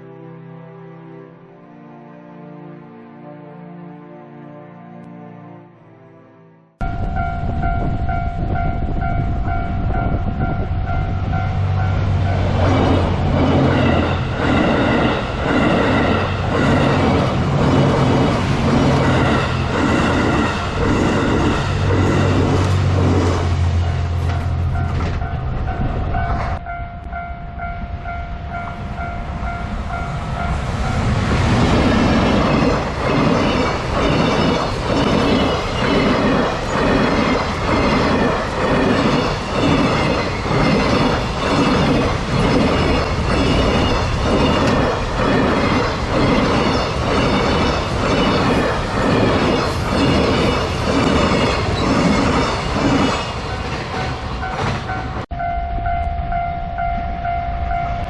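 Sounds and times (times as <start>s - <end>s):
level crossing warning bell: 6.8s - 17.2s, 23.8s - 31.1s, 53.4s - 58.0s.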